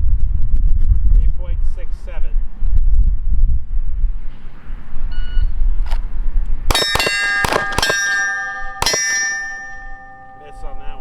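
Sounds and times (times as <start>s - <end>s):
pistol shots: 6.7s - 9.9s
steel targets ringing: 6.7s - 11.0s.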